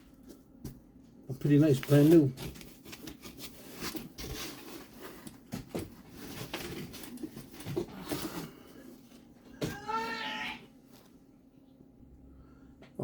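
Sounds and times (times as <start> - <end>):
boxes and packaging handled: 0.0 - 10.2.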